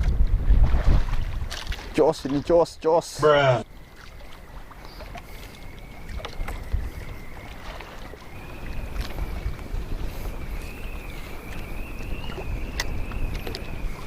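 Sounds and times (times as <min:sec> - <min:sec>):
wind rumbling on microphone: 0:00.0 - 0:02.1, 0:03.6 - 0:14.0
water lapping at hull: 0:00.0 - 0:14.0
faint wavering whine: 0:03.2 - 0:14.0.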